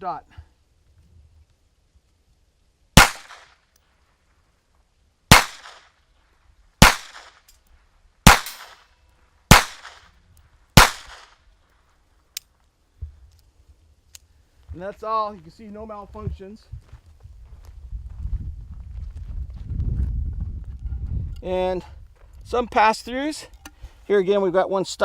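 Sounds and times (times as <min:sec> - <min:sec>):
pistol shots: 0:03.0 - 0:03.6, 0:05.3 - 0:06.0, 0:06.8 - 0:07.5, 0:08.2 - 0:08.9, 0:09.5 - 0:10.1, 0:10.8 - 0:11.4.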